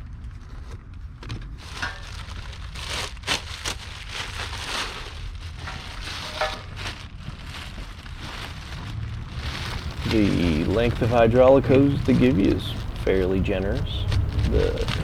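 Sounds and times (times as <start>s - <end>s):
rustling handling noise: 0.5s - 15.0s.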